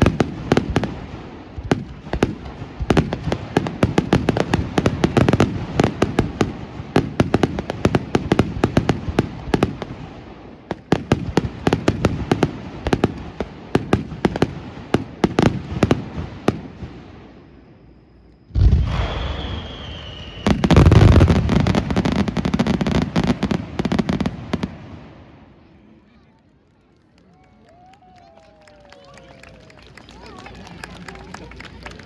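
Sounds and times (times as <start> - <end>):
fireworks cracking and popping: 0.0 - 17.4, 18.5 - 25.3.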